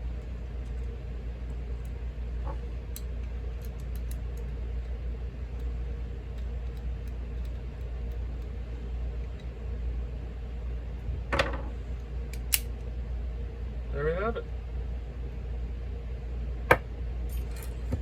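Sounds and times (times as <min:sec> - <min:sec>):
steady low hum: 0:00.0 - 0:18.0
padlock metal clicks: 0:02.9 - 0:04.5, 0:12.3 - 0:12.7.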